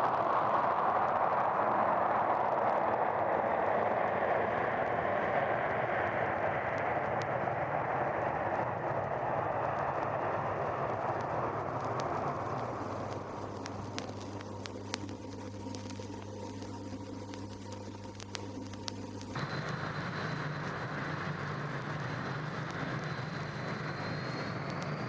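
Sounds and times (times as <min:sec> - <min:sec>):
jet airliner roar: 0:00.5 - 0:14.0, 0:19.4 - 0:25.0
vinyl crackle clicks: 0:10.9 - 0:20.0.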